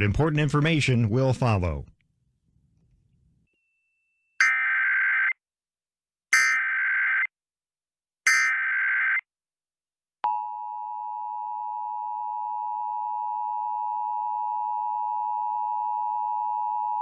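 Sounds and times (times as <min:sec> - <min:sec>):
screeching digital data burst: 0:04.4 - 0:04.9, 0:06.4 - 0:07.3, 0:08.3 - 0:09.2
harsh two-tone alert beep: 0:04.4 - 0:05.3, 0:06.4 - 0:07.3, 0:08.3 - 0:09.2.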